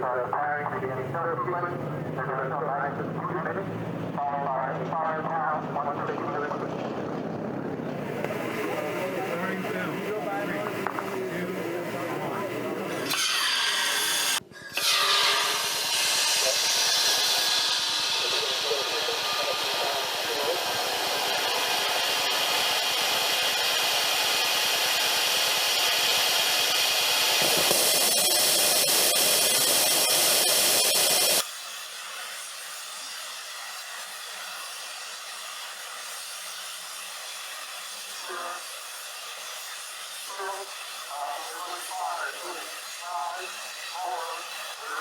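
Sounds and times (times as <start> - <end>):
rocket motor hissing: 12.8 - 45.0.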